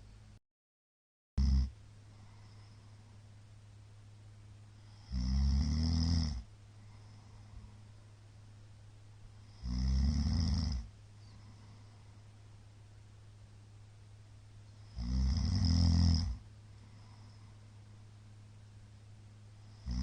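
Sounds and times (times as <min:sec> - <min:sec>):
man snoring heavily: 0:01.4 - 0:01.7, 0:04.9 - 0:06.5, 0:09.5 - 0:10.9, 0:14.9 - 0:16.4, 0:19.7 - 0:20.0.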